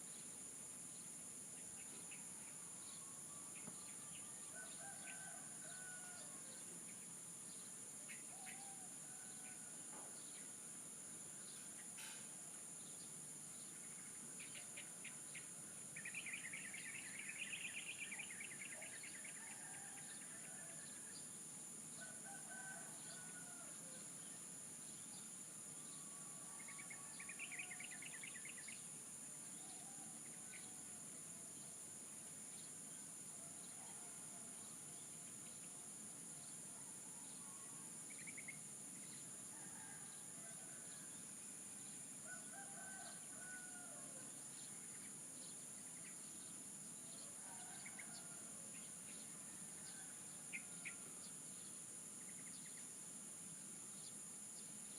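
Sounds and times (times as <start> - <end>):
roosters crowing: 22.0 - 24.0, 42.2 - 44.2.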